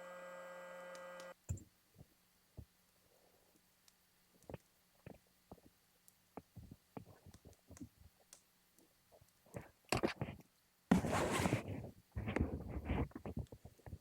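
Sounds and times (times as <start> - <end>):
rustling and scraping: 9.5 - 14.0.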